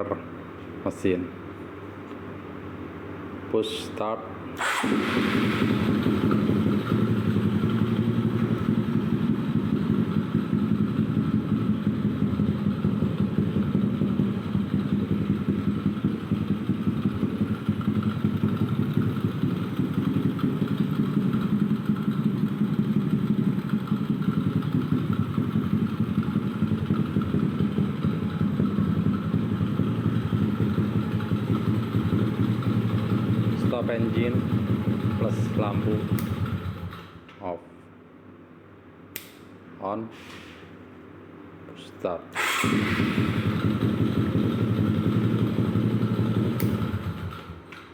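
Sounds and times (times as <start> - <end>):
motorcycle engine idling: 4.7 - 37.2, 42.4 - 47.7.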